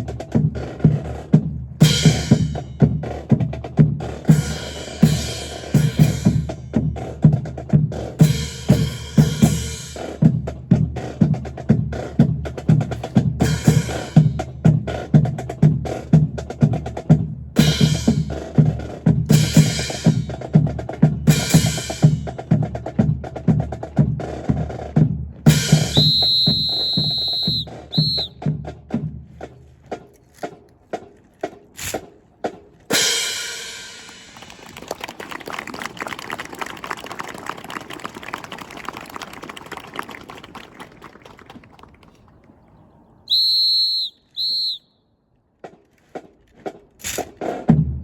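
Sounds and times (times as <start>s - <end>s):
marching snare and bass drums: 0.0s - 34.8s, 45.6s - 48.0s
high whistle blasts: 25.8s - 28.4s, 43.3s - 45.1s.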